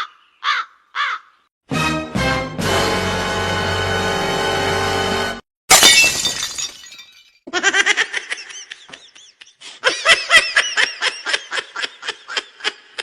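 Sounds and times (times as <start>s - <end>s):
breaking glass ringing: 5.7s - 7.4s.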